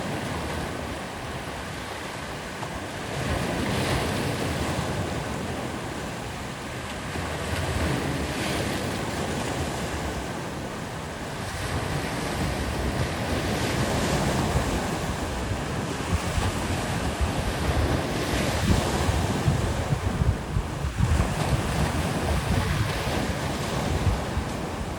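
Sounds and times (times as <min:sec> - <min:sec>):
sea waves washing ashore: 0:00.0 - 0:24.9
wind buffeting microphone: 0:11.4 - 0:24.9.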